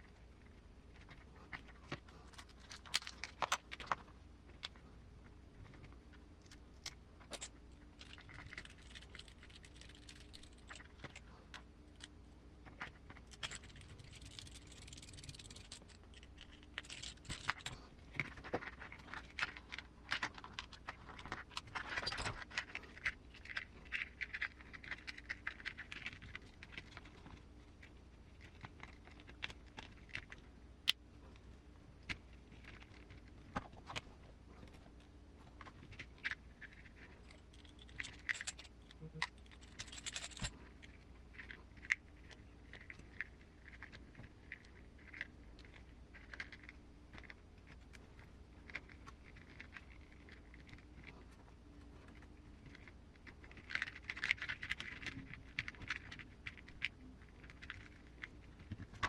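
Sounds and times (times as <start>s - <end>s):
low steady hum: 0.0s - 59.0s
small plastic parts clicking: 1.0s - 31.4s
scratching and rubbing: 7.2s - 30.6s, 31.2s - 59.0s.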